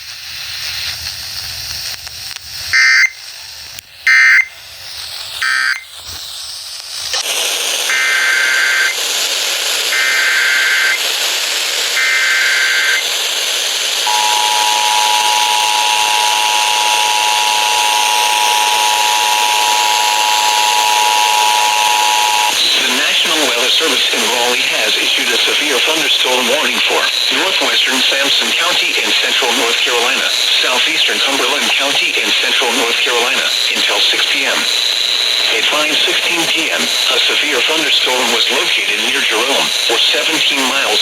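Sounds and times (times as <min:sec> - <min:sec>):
radio hiss: 0:00.0 - 0:41.0
buzzy data tone bursts: 0:02.6 - 0:04.6, 0:05.3 - 0:06.0, 0:09.8 - 0:13.2, 0:14.0 - 0:41.0
two-tone attention signal: 0:02.8 - 0:03.2, 0:04.1 - 0:04.5, 0:14.1 - 0:22.6.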